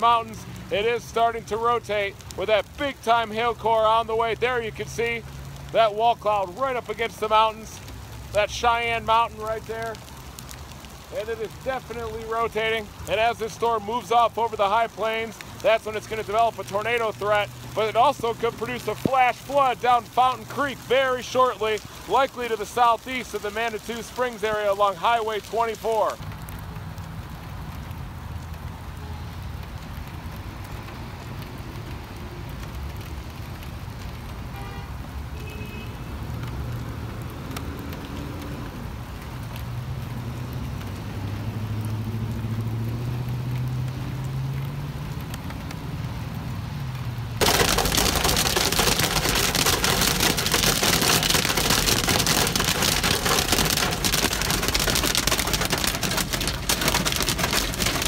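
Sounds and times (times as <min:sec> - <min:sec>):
heavy rain pelting down: 0:00.0 - 0:58.0
vehicle engine rumble: 0:26.0 - 0:58.0.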